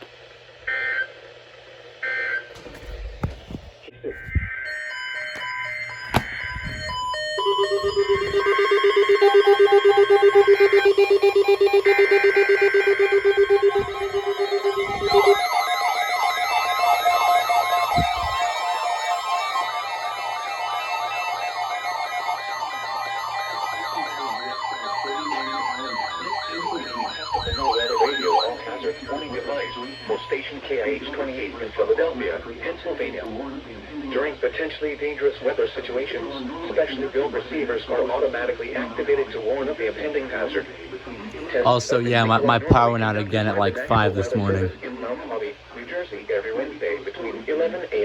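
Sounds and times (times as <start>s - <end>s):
weather radio alarm beeping: 2.0s - 31.8s, 41.6s - 44.7s
warbling data tones: 2.6s - 30.7s
electronic siren-like wail: 4.0s - 30.4s
held synthesizer chord: 4.7s - 30.3s.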